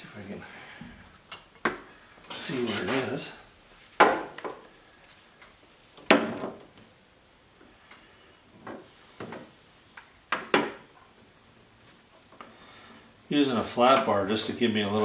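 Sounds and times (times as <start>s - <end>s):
brief scrape: 2.7s - 3.4s.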